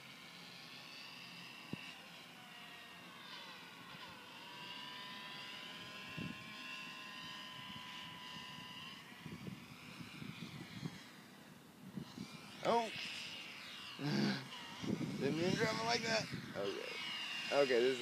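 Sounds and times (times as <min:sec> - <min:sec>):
model plane propeller whining: 0:00.0 - 0:18.0
wind buffeting microphone: 0:06.1 - 0:06.5, 0:07.4 - 0:11.1, 0:11.8 - 0:12.6, 0:14.8 - 0:16.7.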